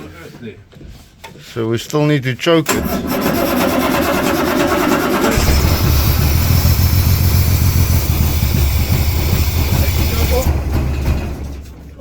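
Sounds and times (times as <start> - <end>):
starter motor cranking engine: 2.7 - 11.7
car engine rumbling: 5.2 - 11.7.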